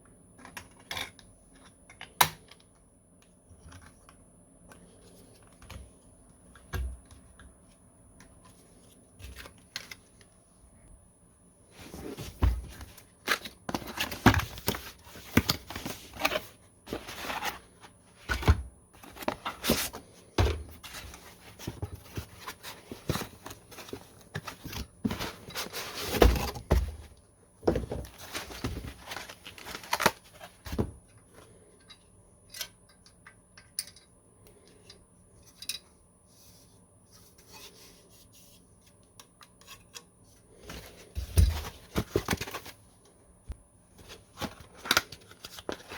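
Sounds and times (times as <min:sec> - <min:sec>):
handling computer parts and packaging: 0:11.7 - 0:32.0, 0:38.6 - 0:43.0, 0:43.9 - 0:45.9.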